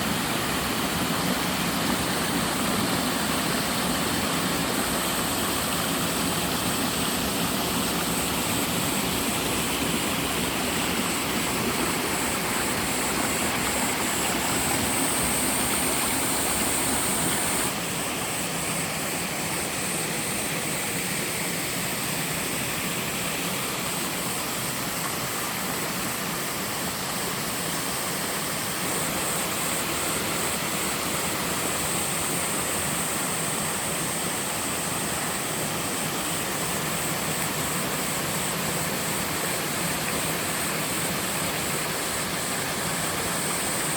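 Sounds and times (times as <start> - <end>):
waterfall rushing: 0.0 - 18.4.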